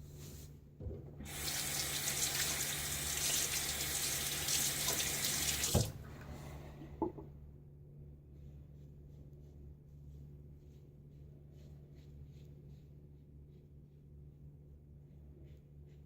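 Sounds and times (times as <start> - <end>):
tap water running: 1.2 - 6.1.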